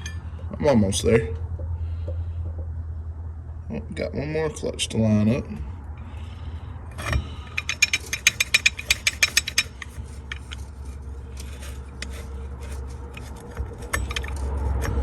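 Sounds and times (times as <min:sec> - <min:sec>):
metal splines clicking: 0:06.9 - 0:15.0.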